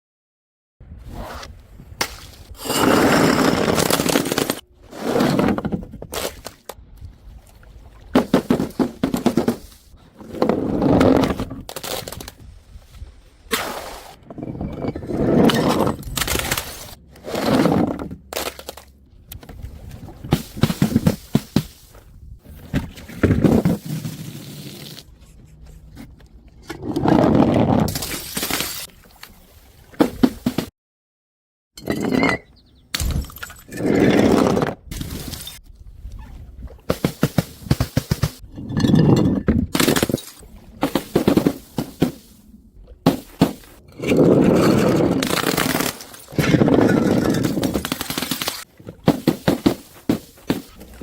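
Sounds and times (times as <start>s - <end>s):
glass bottles smashing: 27.9s - 28.9s, 38.7s - 41.7s, 45.2s - 48.6s
glass breaking and shattering: 27.9s - 28.9s, 33.0s - 33.7s, 38.8s - 40.4s, 45.2s - 48.7s.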